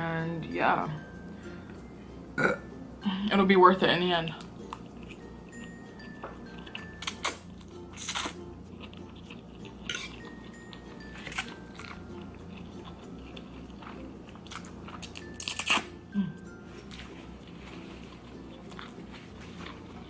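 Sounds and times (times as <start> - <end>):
person chewing food: 4.4 - 16.0, 16.8 - 20.0.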